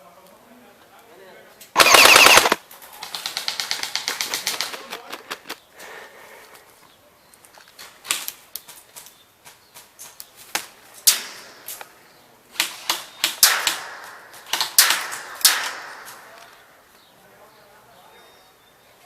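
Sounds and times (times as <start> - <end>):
airsoft guns firing: 1.8 - 4.8, 12.5 - 16.7.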